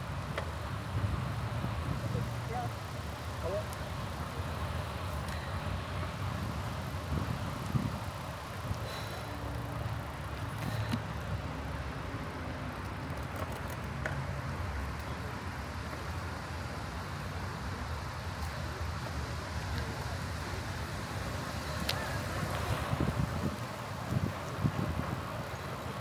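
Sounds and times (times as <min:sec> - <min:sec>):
wind rumbling on microphone: 0:00.0 - 0:12.0, 0:20.8 - 0:26.0
bicycle tyre and road noise: 0:00.0 - 0:26.0.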